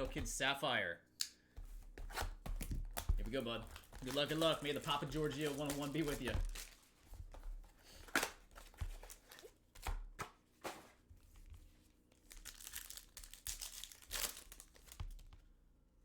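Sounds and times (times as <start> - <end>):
packaging ripping and crinkling: 2.9 - 6.9, 8.0 - 9.6, 12.2 - 15.3.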